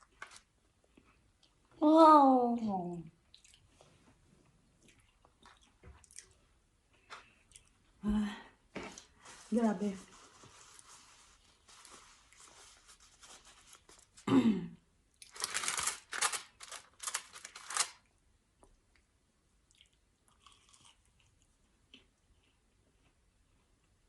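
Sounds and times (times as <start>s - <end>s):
crunching crispy food: 15.2s - 18.1s.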